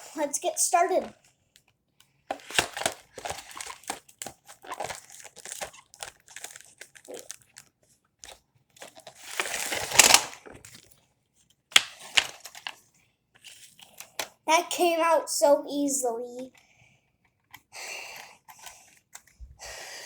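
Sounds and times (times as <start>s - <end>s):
packaging crinkling and rustling: 2.3s - 11.0s, 11.7s - 14.2s.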